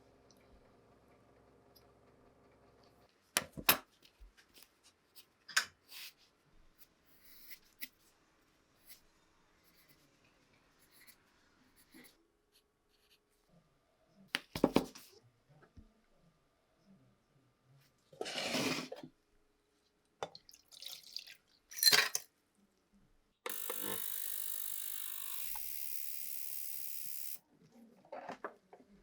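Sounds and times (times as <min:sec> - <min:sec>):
small metal parts clicking: 0:23.5 - 0:27.4.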